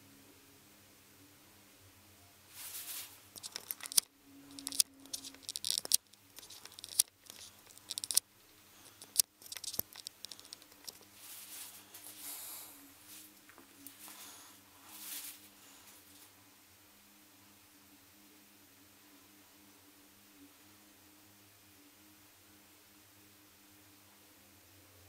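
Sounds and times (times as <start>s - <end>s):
faint steady hum: 0.0s - 25.0s
crinkling and rustling handling: 2.5s - 16.4s
sharp clicks: 3.4s - 11.1s.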